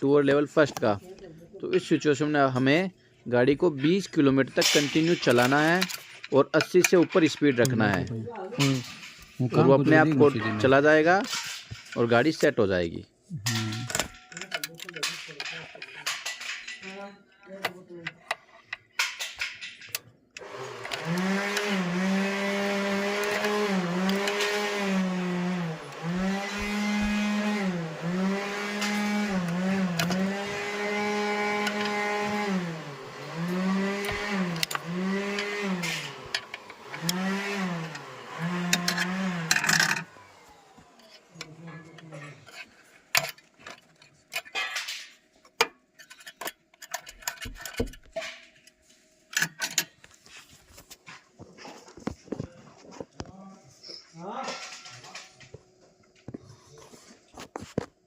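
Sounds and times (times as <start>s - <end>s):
small motor whining: 20.4s - 42.7s.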